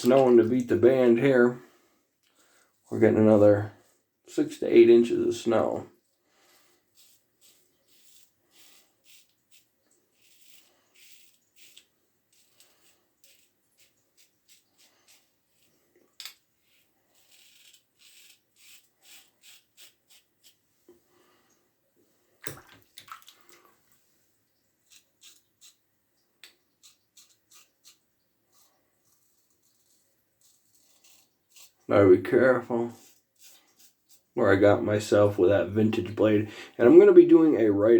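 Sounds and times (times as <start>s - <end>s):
razor scraping stubble: 6.9s - 15.9s, 16.6s - 20.6s, 24.8s - 25.8s, 26.8s - 37.7s.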